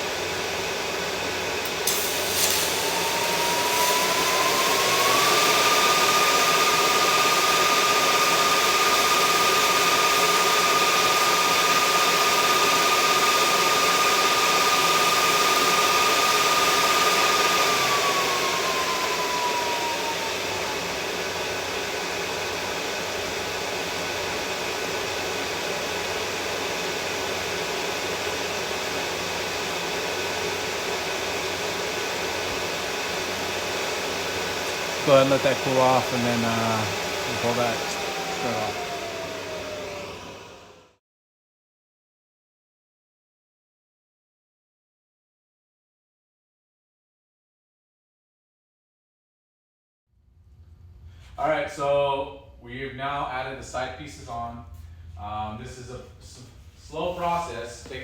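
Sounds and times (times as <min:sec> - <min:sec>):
electric grinder on steel: 0:01.6 - 0:20.8, 0:34.5 - 0:40.5.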